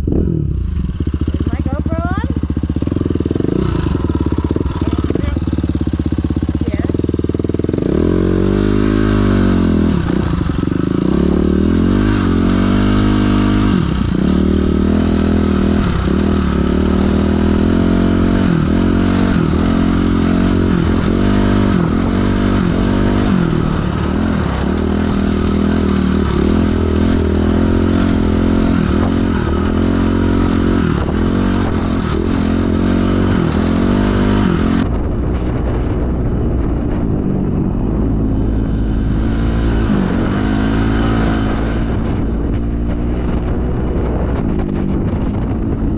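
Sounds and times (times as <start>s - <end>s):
dirt bike engine revving: 0.0s - 34.8s, 37.9s - 44.0s.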